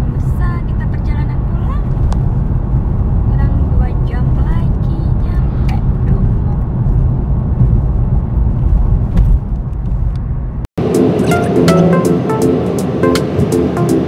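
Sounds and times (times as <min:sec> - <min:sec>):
car road and engine rumble: 0:00.0 - 0:14.0
music: 0:10.8 - 0:14.0.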